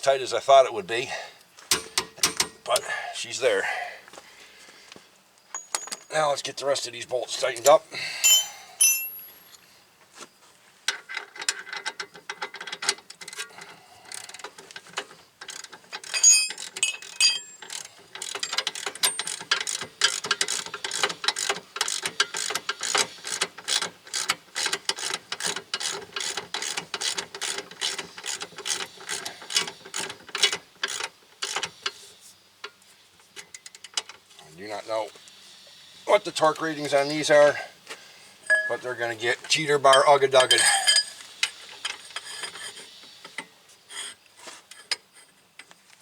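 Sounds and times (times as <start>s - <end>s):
metallic clinks of tools: 5.5s - 6.3s, 7.6s - 9.6s, 16.0s - 19.7s, 38.4s - 39.0s, 39.8s - 41.6s
ratchet wrench clicking: 15.4s - 31.7s.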